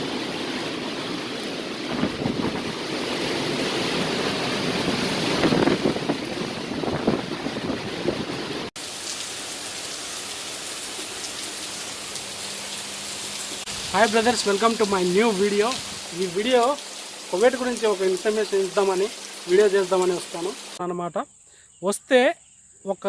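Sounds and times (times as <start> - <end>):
heavy rain pouring: 0.0 - 20.8
sharp water drips: 8.7 - 20.8.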